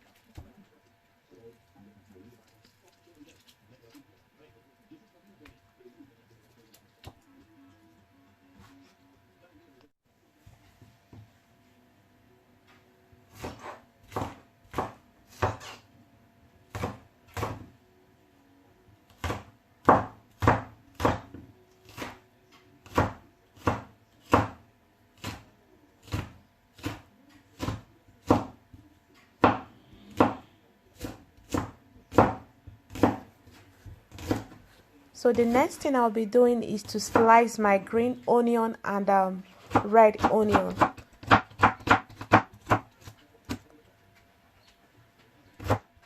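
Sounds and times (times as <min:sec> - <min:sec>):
knife chopping on cutting board: 0:13.3 - 0:15.8, 0:16.7 - 0:17.7, 0:19.2 - 0:22.2, 0:22.8 - 0:24.6, 0:25.2 - 0:28.6, 0:29.4 - 0:34.6, 0:39.7 - 0:43.6.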